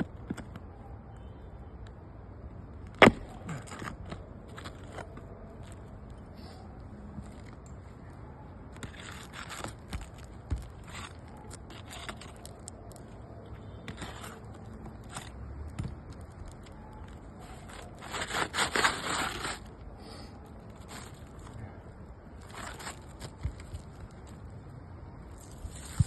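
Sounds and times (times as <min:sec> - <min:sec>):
roof shingle scraping and crackling: 0:02.9 - 0:06.2, 0:08.7 - 0:26.0.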